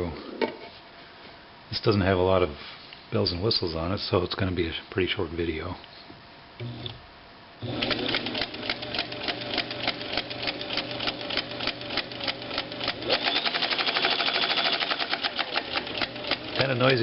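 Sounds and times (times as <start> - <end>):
sewing machine motor hum: 6.6 - 7.0, 7.6 - 17.0
sewing machine stitches clattering: 7.6 - 17.0.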